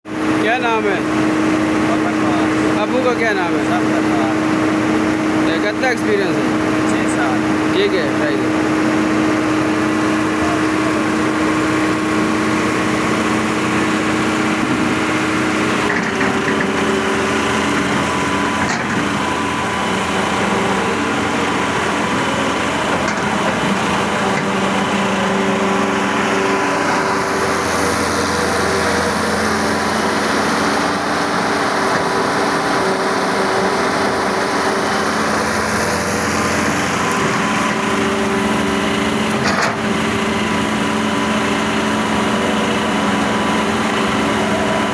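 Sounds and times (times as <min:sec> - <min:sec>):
excavator diesel engine running: 0:00.1 - 0:44.9.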